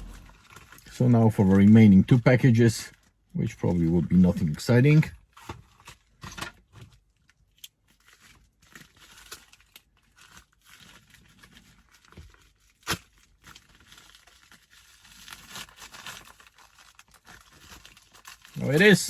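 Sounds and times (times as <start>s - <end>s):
wrapping rustling and tearing: 5.3s - 19.0s.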